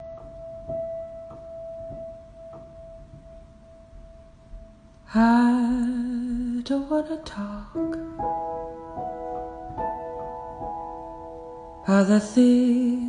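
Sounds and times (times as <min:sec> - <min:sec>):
soft thumps: 0:00.0 - 0:05.1.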